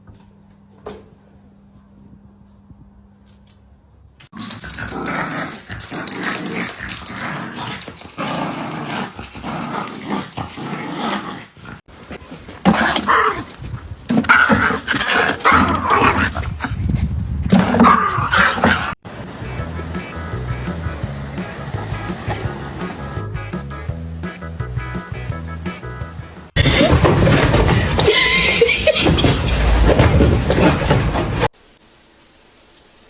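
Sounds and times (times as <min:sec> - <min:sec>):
dog growling and barking: 0:04.3 - 0:16.9, 0:17.5 - 0:19.0, 0:26.6 - 0:28.2, 0:29.0 - 0:31.5.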